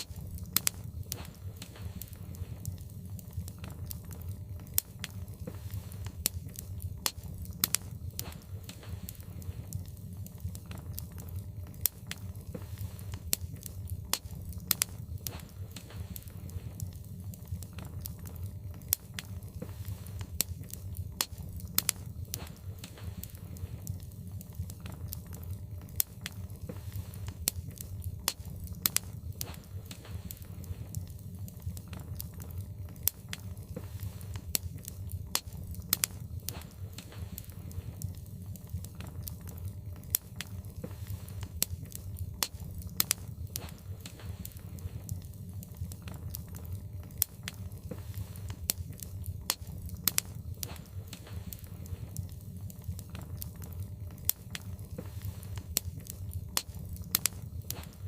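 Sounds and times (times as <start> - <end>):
low fire rumble: 0.0 - 58.0
wood fire crackling and popping: 0.0 - 58.0.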